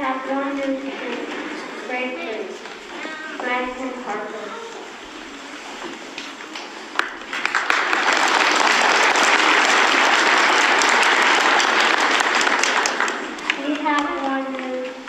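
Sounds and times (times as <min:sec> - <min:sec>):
audience applauding: 0:06.1 - 0:14.6.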